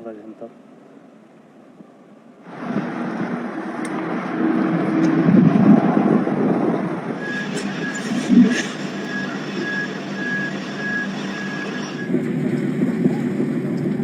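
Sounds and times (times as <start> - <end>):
train running on rails: 0.0 - 14.0
high steady squeal: 6.4 - 12.3.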